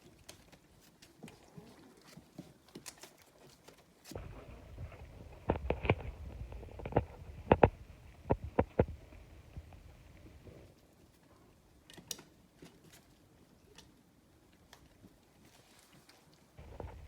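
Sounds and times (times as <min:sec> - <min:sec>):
puppies eating: 0:00.0 - 0:11.2
sharp clicks and knocks: 0:04.2 - 0:10.4
low rumbling: 0:04.2 - 0:10.6.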